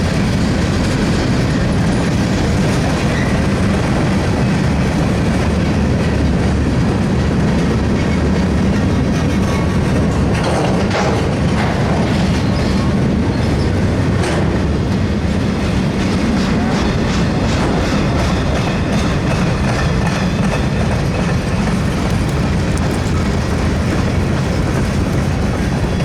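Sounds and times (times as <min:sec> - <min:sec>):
train wheels rumbling on rail: 0:00.0 - 0:26.0
wheels clicking over track: 0:07.2 - 0:26.0.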